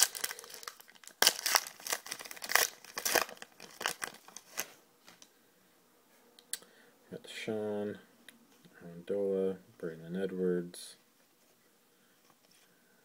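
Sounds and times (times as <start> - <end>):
card pack wrapper tearing: 0.0 - 4.7.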